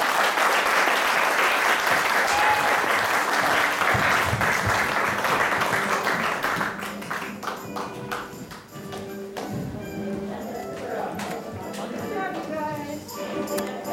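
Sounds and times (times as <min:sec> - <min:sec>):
audience applauding: 0:00.0 - 0:08.6
faint music: 0:02.3 - 0:13.9.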